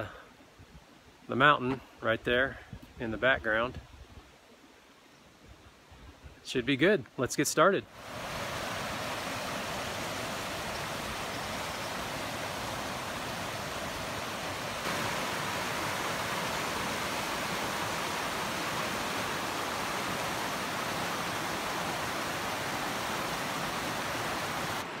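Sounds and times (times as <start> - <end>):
creek water flowing: 7.9 - 25.0.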